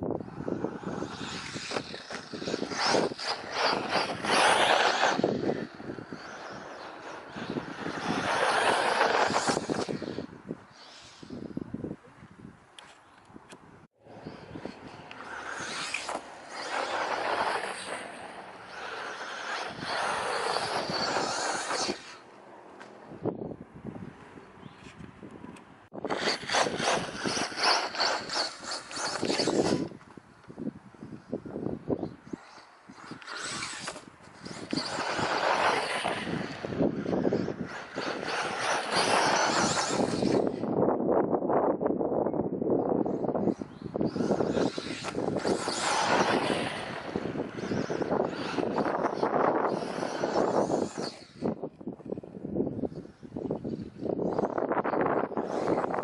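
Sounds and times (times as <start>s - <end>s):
wind buffeting microphone: 0.0s - 22.2s, 23.0s - 56.0s
rc truck driving over rough ground: 0.0s - 23.4s, 24.6s - 41.0s, 42.8s - 56.0s.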